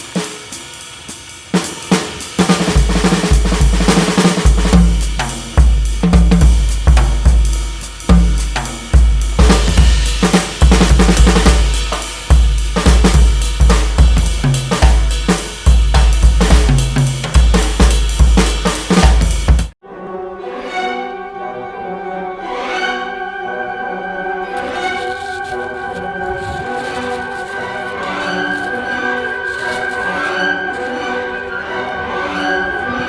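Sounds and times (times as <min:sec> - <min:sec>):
drum-kit beat: 0:00.0 - 0:19.8.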